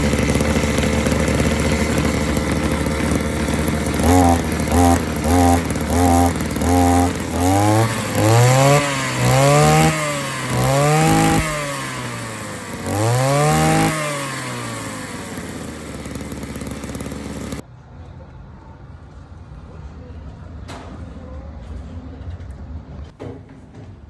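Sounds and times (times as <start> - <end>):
two-stroke engine revving: 0.0 - 17.6.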